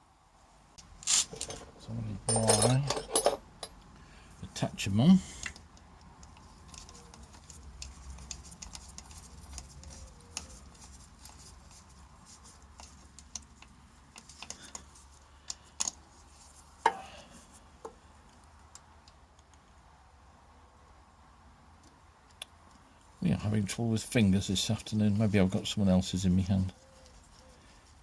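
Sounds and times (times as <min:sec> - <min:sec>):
metal clicks and taps: 0:12.8 - 0:16.0.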